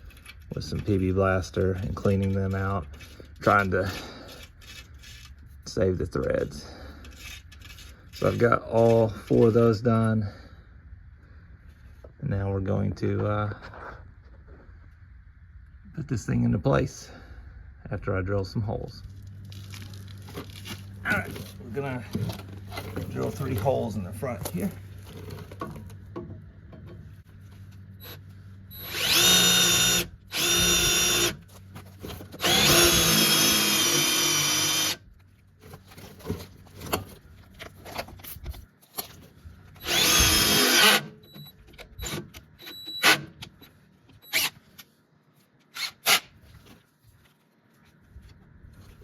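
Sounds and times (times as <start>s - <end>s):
power drill drilling into metal: 28.8s - 31.4s, 32.4s - 35.0s, 39.8s - 41.1s.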